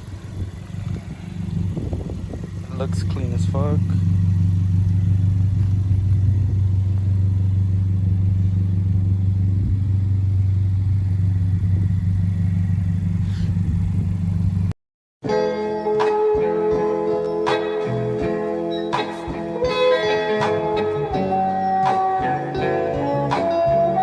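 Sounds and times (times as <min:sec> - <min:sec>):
car engine idling: 0:00.0 - 0:14.8
guitar music: 0:15.2 - 0:24.0.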